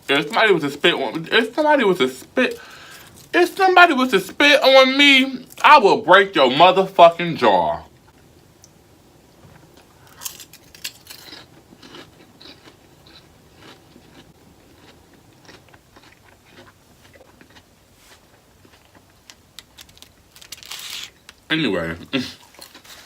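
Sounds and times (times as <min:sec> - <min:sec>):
chewing with crunches: 0:09.4 - 0:21.0, 0:22.4 - 0:23.0.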